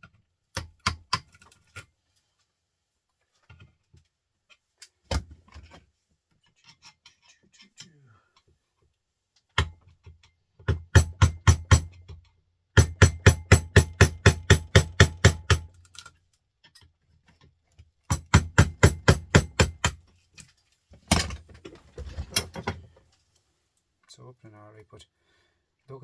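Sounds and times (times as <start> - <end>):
hammer striking metal casing: 10.9 - 12.0, 12.8 - 15.7, 18.1 - 20.0.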